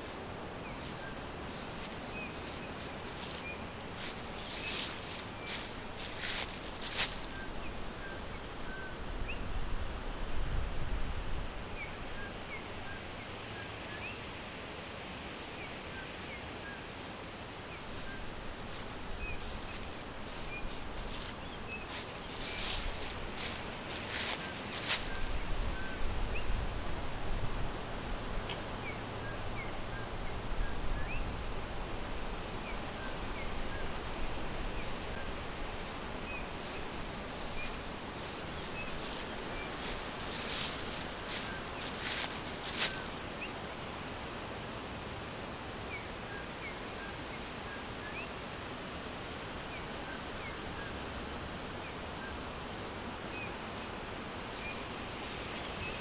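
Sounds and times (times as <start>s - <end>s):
small birds chirping: 0.0s - 7.8s, 16.0s - 25.4s, 34.8s - 43.6s, 51.8s - 56.0s
steady background hiss: 0.0s - 56.0s.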